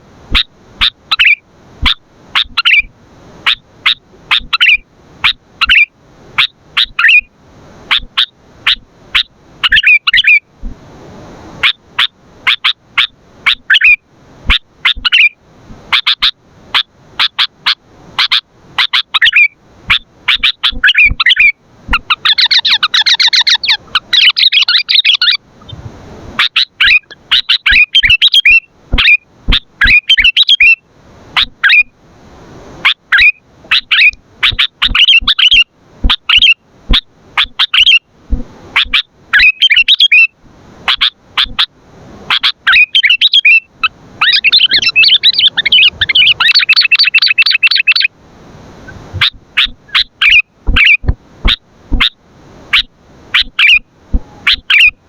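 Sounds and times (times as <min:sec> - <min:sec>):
bird chirping: 0:00.3 - 0:07.3, 0:07.9 - 0:10.4, 0:17.3 - 0:25.4, 0:26.4 - 0:30.8, 0:33.1 - 0:36.6, 0:38.8 - 0:40.3, 0:42.3 - 0:48.1, 0:49.2 - 0:52.1, 0:52.8 - 0:55.0
bird rapid chattering: 0:00.8 - 0:02.9, 0:18.2 - 0:25.4, 0:26.5 - 0:30.8, 0:33.1 - 0:36.6, 0:44.2 - 0:48.1, 0:49.2 - 0:52.1, 0:52.8 - 0:53.8, 0:54.4 - 0:54.9.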